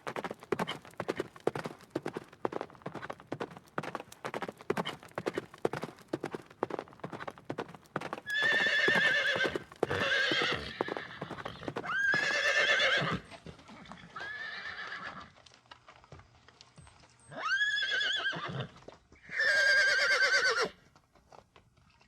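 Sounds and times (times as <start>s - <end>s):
horse hooves clip-clopping: 0.0s - 19.5s, 20.2s - 22.0s
horse whinnying: 8.3s - 15.3s, 17.3s - 20.8s.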